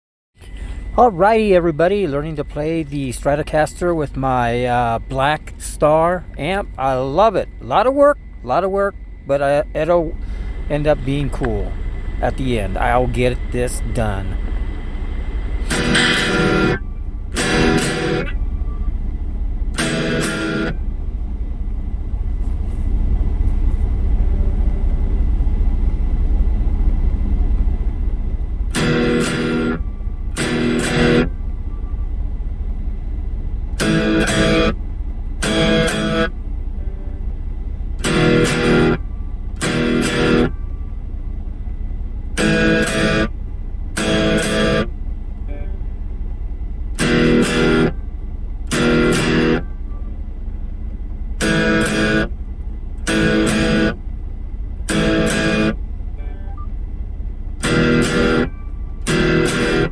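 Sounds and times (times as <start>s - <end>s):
amp low rumble: 0.4s - 19.8s
electric guitar chords strummed: 0.4s - 21.3s, 28.6s - 32.0s, 33.7s - 41.2s, 42.1s - 46.3s, 46.9s - 56.6s, 57.5s - 59.9s
steady low hum: 0.4s - 59.9s.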